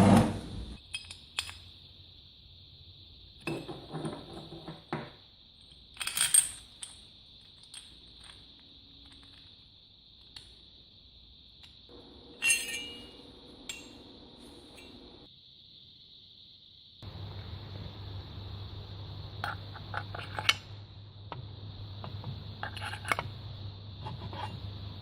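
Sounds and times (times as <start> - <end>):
metal tools clinking: 0.8 - 1.7, 5.6 - 9.5, 12.4 - 14.0.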